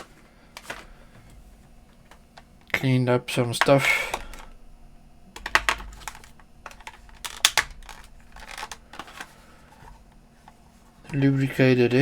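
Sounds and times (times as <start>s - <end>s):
plastic device clicks and taps: 5.4s - 9.3s.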